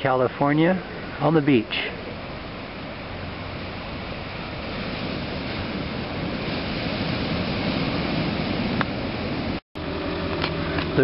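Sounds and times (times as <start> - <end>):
ocean surf washing ashore: 0.0 - 11.0
wind on microphone: 1.9 - 9.6.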